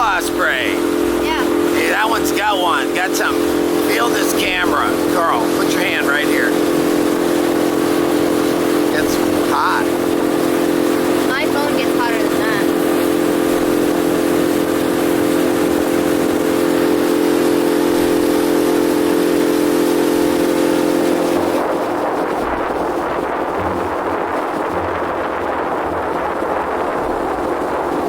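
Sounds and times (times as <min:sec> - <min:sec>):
motorboat engine running: 0:00.0 - 0:28.0
rushing noise: 0:20.1 - 0:28.0.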